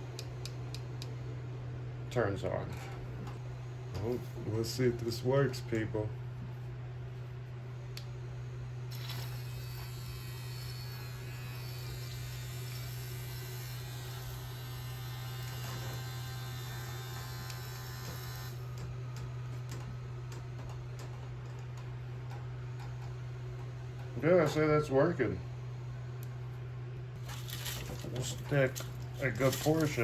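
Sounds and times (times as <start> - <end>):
grinder motor whining: 8.9 - 19.0.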